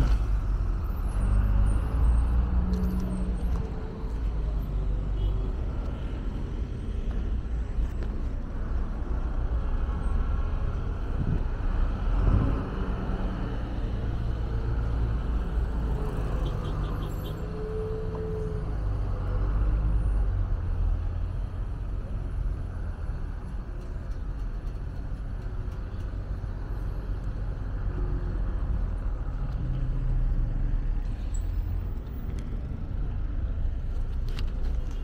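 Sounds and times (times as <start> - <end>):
rumble of passing cars: 0.0 - 35.0.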